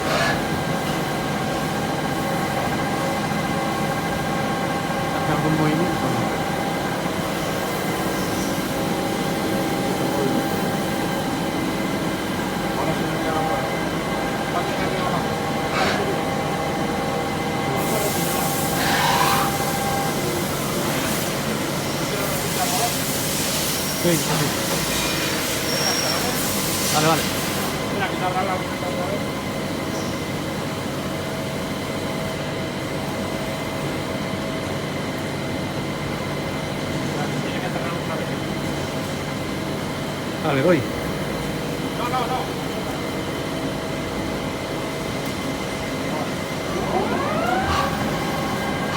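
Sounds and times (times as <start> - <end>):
lathe mechanical hum: 0.0 - 48.9
steady machine whine: 43.6 - 48.9.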